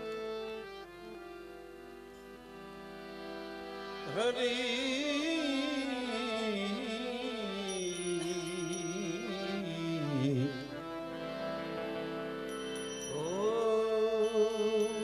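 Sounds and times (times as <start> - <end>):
sustained musical accompaniment: 0.0 - 15.0
man singing a long note: 13.1 - 15.0.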